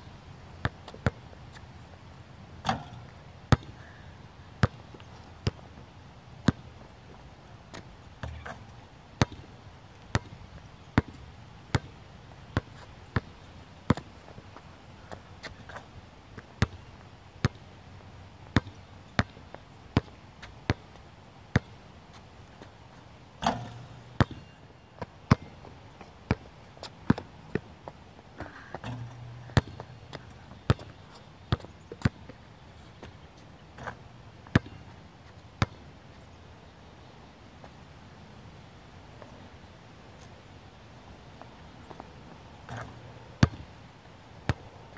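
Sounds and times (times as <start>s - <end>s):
basketball bouncing: 2.6s - 3.8s, 10.1s - 10.4s, 23.4s - 24.6s, 25.3s - 25.5s, 28.8s - 32.2s, 33.8s - 34.8s, 42.7s - 43.7s.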